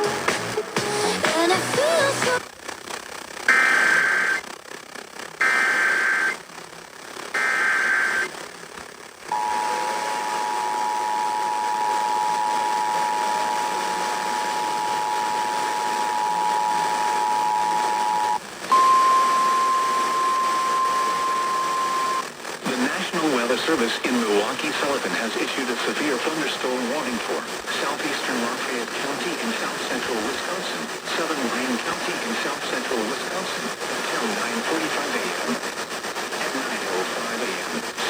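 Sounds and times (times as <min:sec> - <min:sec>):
screeching digital data bursts: 0:03.5 - 0:04.6, 0:05.4 - 0:06.4, 0:07.3 - 0:08.4
steady warning tone: 0:05.4 - 0:06.4, 0:07.4 - 0:08.4, 0:09.3 - 0:22.3
two-tone attention signal: 0:09.3 - 0:22.2.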